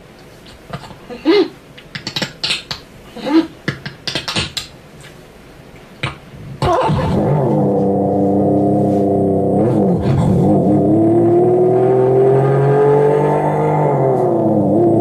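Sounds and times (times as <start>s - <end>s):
man imitating an engine: 6.6s - 11.5s.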